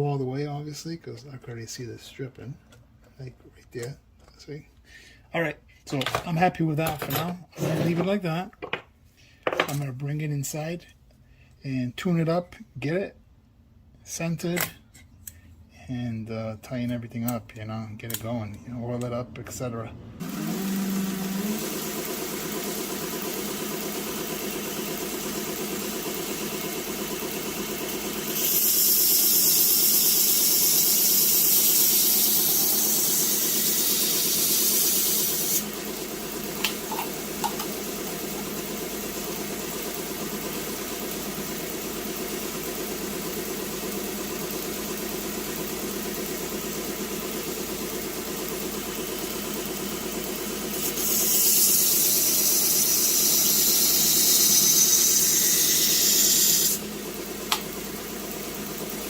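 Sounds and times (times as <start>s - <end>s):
sharpening machine motor: 20.2s - 26.7s, 27.3s - 38.8s, 50.7s - 56.9s.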